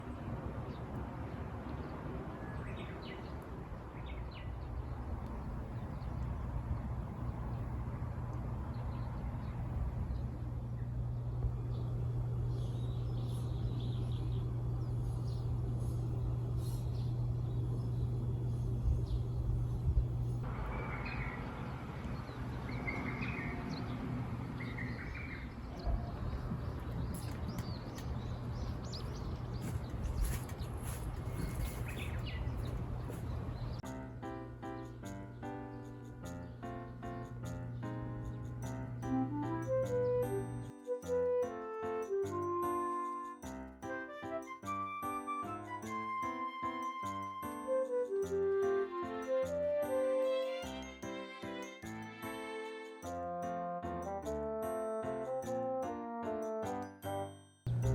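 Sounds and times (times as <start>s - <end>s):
birds chirping: 0.0s - 33.8s
steady low rumble: 4.6s - 22.8s, 57.7s - 57.9s
steady low hum: 4.6s - 33.8s, 57.7s - 57.9s.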